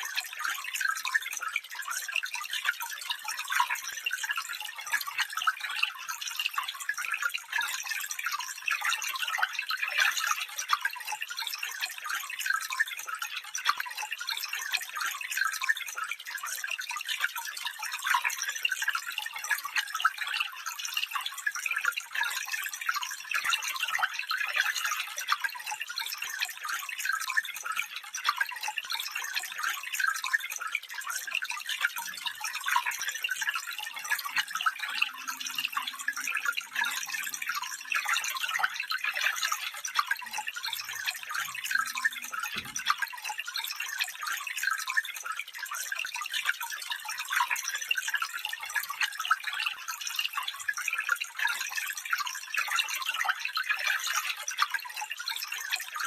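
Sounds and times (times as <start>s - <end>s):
stream babbling over stones: 32.6s - 44.0s.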